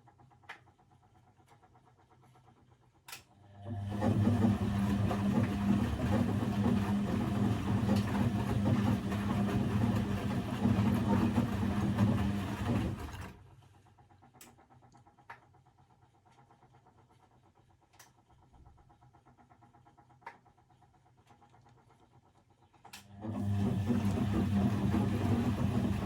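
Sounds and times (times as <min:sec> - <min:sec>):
washing machine motor churning: 0:03.5 - 0:14.9, 0:23.0 - 0:26.0.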